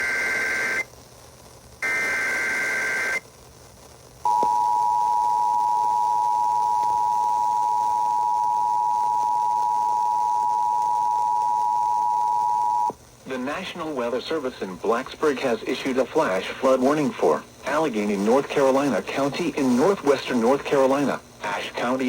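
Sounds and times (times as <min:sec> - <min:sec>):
data burst tones: 0:04.3 - 0:12.9
two-tone attention signal: 0:04.3 - 0:12.9.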